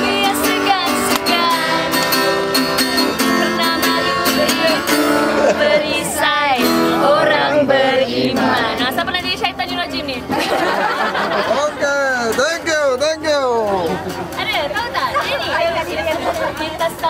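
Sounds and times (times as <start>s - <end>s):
person singing: 0.0s - 8.9s
strummed acoustic guitar: 0.0s - 17.0s.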